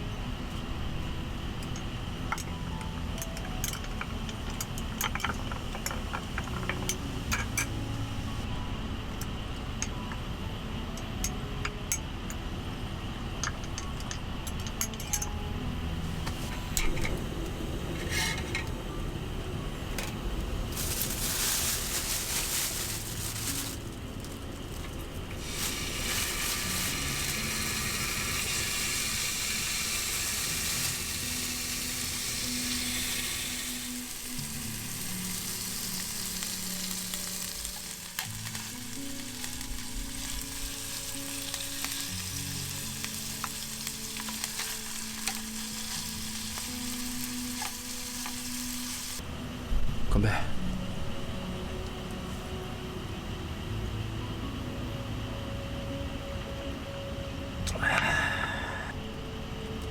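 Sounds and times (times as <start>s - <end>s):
soft background music: 0.0s - 59.9s
meat sizzling in a pan: 25.3s - 49.2s.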